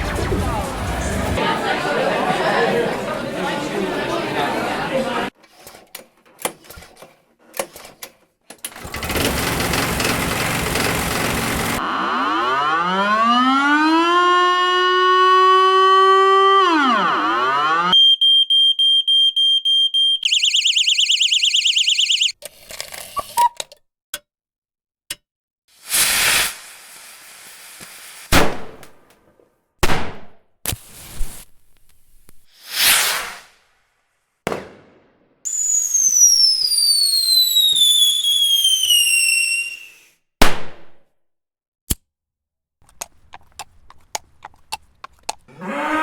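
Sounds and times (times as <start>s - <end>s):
fast warbling alarm tone: 11.8s - 19.2s, 20.0s - 22.3s
siren winding up and down: 11.8s - 22.4s, 35.5s - 40.0s
rapid high electronic beeps: 20.0s - 22.3s.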